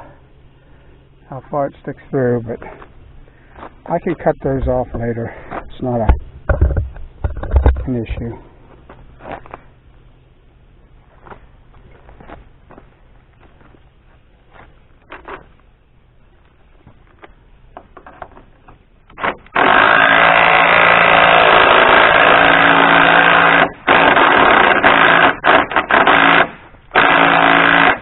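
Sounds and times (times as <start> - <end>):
power tool driving a nut: 19.1 - 28.0.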